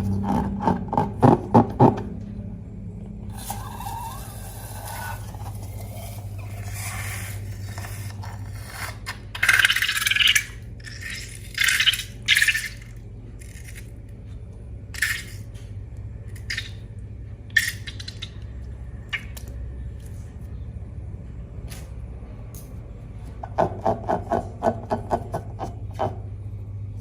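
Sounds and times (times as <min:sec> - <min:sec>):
steady low hum: 0:00.0 - 0:27.0
slime crinkling scrapes: 0:04.6 - 0:09.8.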